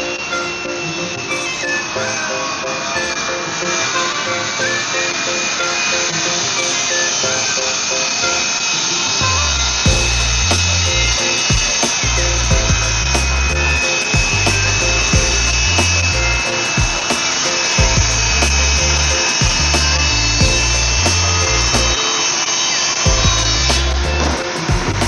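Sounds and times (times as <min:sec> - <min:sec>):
stepping bass line: 0:09.4 - 0:17.1, 0:17.8 - 0:22.0, 0:23.1 - 0:25.0
steady drum beat: 0:09.8 - 0:22.0, 0:23.1 - 0:25.0.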